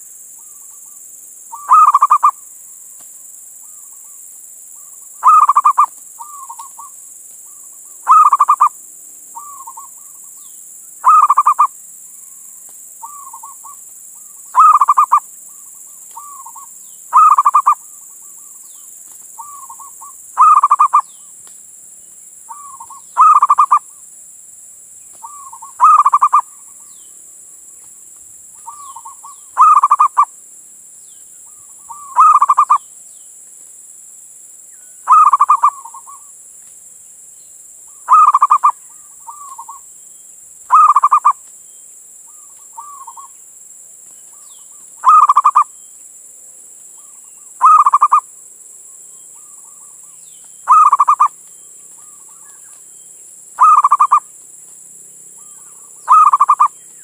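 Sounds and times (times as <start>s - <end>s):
dove cooing: 1.5s - 2.4s, 5.2s - 6.9s, 7.5s - 8.8s, 11.0s - 11.7s, 13.0s - 15.2s, 16.2s - 18.6s, 19.4s - 21.1s, 22.5s - 23.9s, 25.2s - 26.7s, 28.6s - 30.3s, 31.5s - 32.8s, 35.1s - 36.3s, 38.1s - 39.8s, 40.7s - 41.4s, 45.0s - 45.7s, 47.6s - 48.2s, 50.7s - 51.3s, 53.6s - 54.3s, 55.4s - 56.8s.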